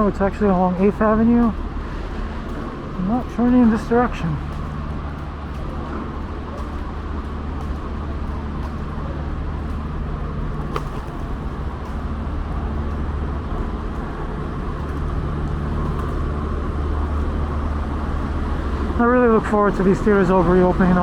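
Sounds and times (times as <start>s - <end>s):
city traffic rumble: 0.0s - 21.0s.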